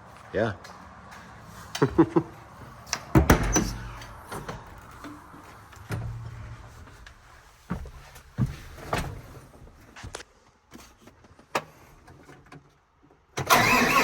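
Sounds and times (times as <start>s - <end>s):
metal clunks and knocks: 2.9s - 7.0s.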